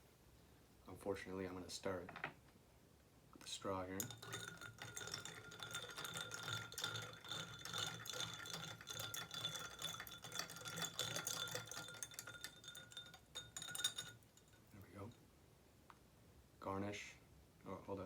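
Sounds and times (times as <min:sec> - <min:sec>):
ice cubes clinking in a glass: 0:03.9 - 0:15.2.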